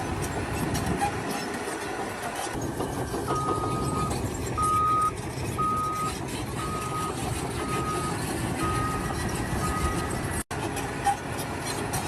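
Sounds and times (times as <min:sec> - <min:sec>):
low engine rumble: 0:00.0 - 0:12.0
vehicle back-up alarm beeping: 0:03.3 - 0:10.4.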